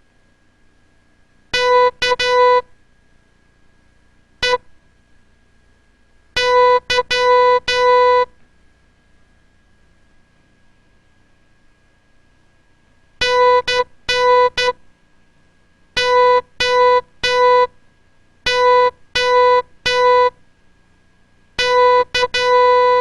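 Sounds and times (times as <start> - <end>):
morse code beeps: 1.6 - 2.7, 4.4 - 4.6, 6.4 - 8.3, 13.2 - 14.8, 16.0 - 17.7, 18.5 - 20.4, 21.6 - 23.0.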